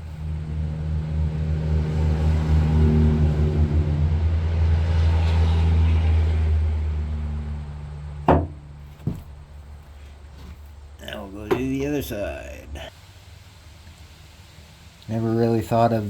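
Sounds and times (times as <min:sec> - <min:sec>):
vehicle engine passing by: 0:00.0 - 0:09.0.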